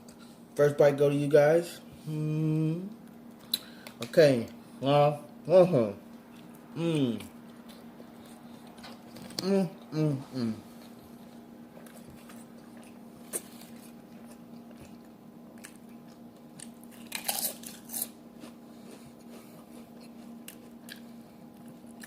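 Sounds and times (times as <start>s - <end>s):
low electrical hum: 0.0s - 22.0s
person chewing food: 6.1s - 9.9s, 10.6s - 22.0s.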